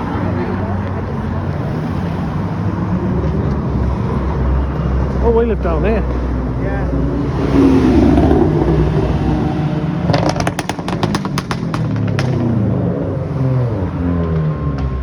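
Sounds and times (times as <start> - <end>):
supercar engines driving past: 0.0 - 15.0
sharp exhaust pops: 7.2 - 13.0.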